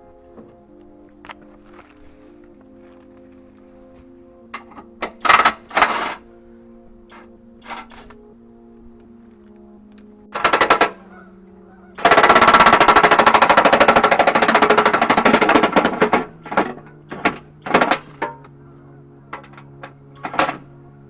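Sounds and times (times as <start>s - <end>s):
low hum: 0.0s - 21.0s
pneumatic tool hammering: 4.6s - 6.2s, 7.1s - 8.2s, 10.3s - 11.0s, 12.0s - 18.5s, 19.3s - 20.7s.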